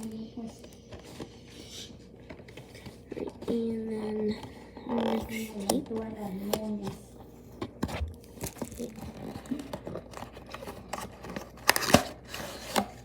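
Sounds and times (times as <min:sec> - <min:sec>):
packaging crinkling: 0:08.0 - 0:13.0
tape peeling off a box: 0:10.5 - 0:13.0.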